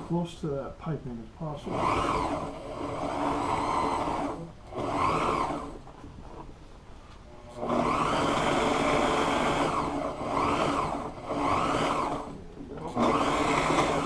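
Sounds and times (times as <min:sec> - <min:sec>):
sewing machine stitching: 0:01.6 - 0:05.8, 0:07.5 - 0:14.0.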